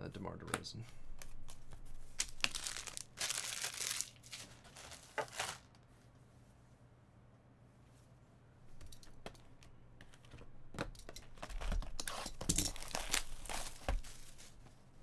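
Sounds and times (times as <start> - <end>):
foil wrapper crinkling and tearing: 2.2 - 5.8, 11.7 - 14.6.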